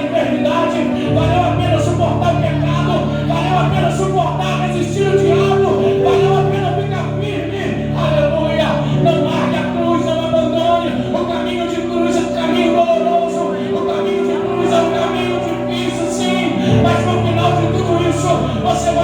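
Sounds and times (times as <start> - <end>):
electric bass: 0.0 - 19.0
people singing: 0.0 - 19.0
worship band playing: 0.0 - 19.0.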